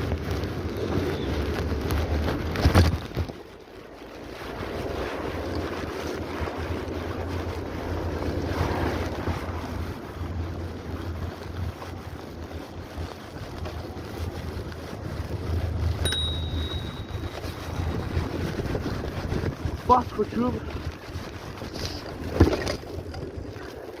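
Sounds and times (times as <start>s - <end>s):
wind rushing over microphone: 0.0s - 24.0s
low rumble: 13.4s - 19.9s
short high tone: 16.1s - 17.5s.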